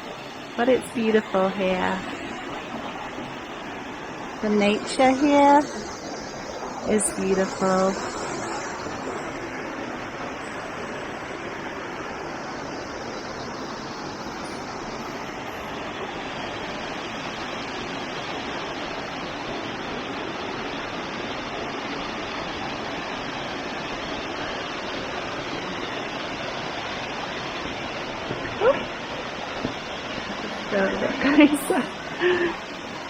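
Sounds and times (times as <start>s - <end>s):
waterfall rushing and splashing: 8.1s - 33.0s.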